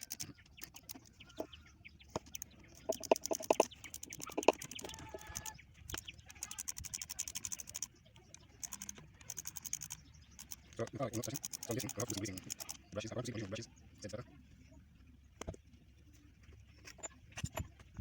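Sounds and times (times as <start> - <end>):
hand tools clicking and tapping: 0.0 - 7.9, 8.6 - 12.8
chicken clucking: 2.8 - 5.6.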